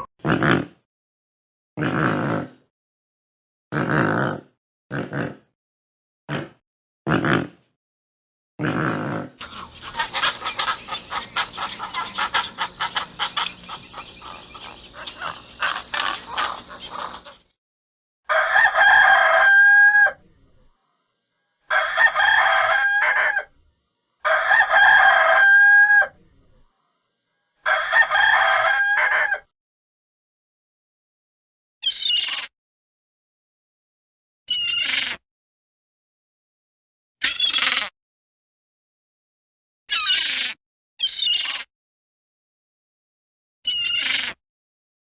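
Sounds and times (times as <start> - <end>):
rooster crowing: 9.4 - 17.3, 18.3 - 20.2, 21.7 - 23.5, 24.2 - 26.2, 27.6 - 29.4
chicken clucking: 9.4 - 17.5.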